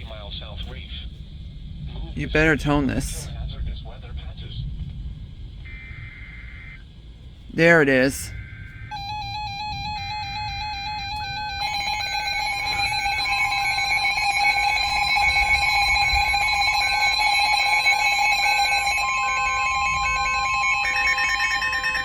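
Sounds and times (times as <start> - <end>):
electronic alarm tones: 5.7 - 6.8, 7.6 - 22.0.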